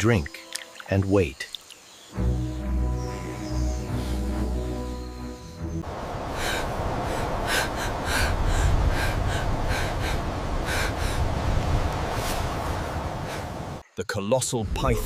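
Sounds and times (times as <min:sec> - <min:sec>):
background music: 0:02.1 - 0:05.8.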